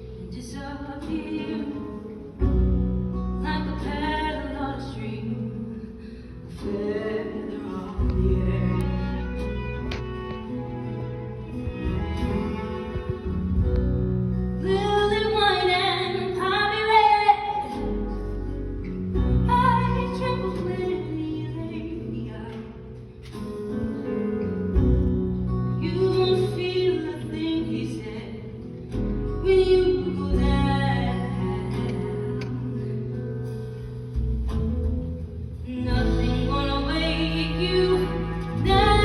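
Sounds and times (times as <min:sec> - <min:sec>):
woman singing with vibrato: 0:00.0 - 0:02.6, 0:03.4 - 0:09.7, 0:14.6 - 0:18.3, 0:19.2 - 0:22.9, 0:25.8 - 0:28.7, 0:29.3 - 0:33.5, 0:35.6 - 0:39.0
band accompaniment: 0:07.1 - 0:15.5, 0:28.7 - 0:39.0
low bass notes: 0:07.6 - 0:15.6.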